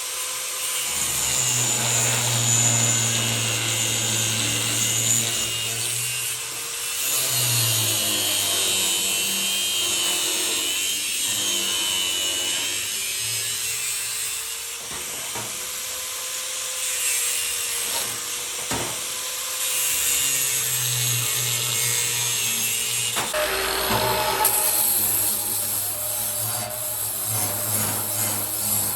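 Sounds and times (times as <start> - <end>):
power tool motor hum: 0.6 - 28.9
abrasive scraping on knife metal: 23.2 - 28.9.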